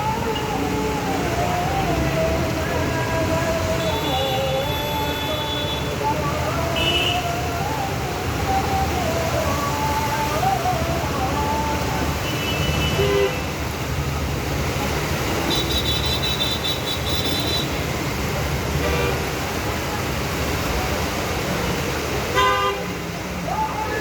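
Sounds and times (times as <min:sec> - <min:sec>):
running car engines: 0:00.0 - 0:24.0
car horns honking: 0:22.3 - 0:22.9.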